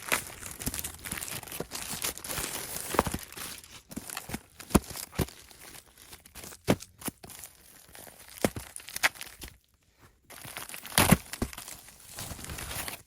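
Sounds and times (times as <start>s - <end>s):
packaging crinkling and tearing: 0.0s - 9.4s, 10.3s - 13.0s.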